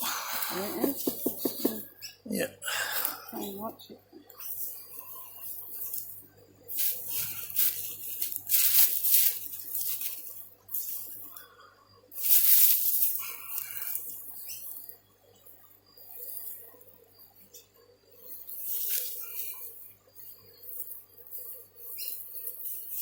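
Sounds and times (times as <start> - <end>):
soil and plants rustling: 2.8 - 11.4, 12.1 - 15.0, 18.3 - 23.0.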